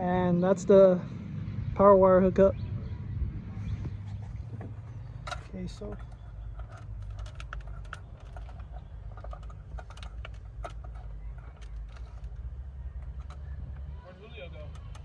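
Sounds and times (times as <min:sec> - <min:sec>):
small parts and tools clicking: 0:05.2 - 0:15.0.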